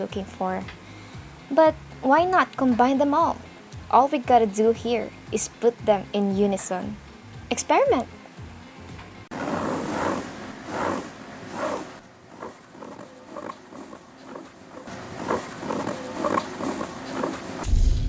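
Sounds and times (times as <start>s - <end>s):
claws scratching carpet: 9.3s - 17.6s.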